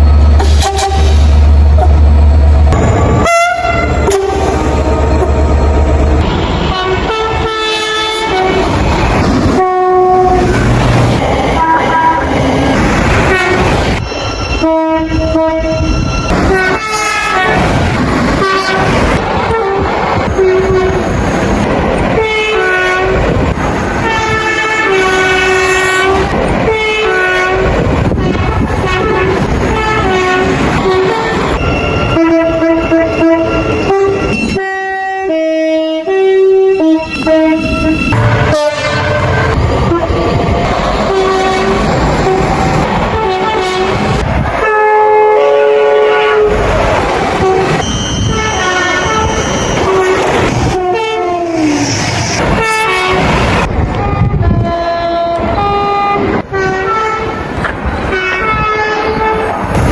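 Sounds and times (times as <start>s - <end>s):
trains running on track: 0.0s - 59.9s
train horn blasts: 0.4s - 1.9s, 2.8s - 4.6s, 6.2s - 8.6s, 9.5s - 10.8s, 11.6s - 12.3s, 13.2s - 13.7s, 14.6s - 17.7s, 18.4s - 21.0s, 22.1s - 23.2s, 24.0s - 40.3s, 41.0s - 46.6s, 47.4s - 51.7s, 52.5s - 53.3s, 54.0s - 57.4s, 58.1s - 59.6s.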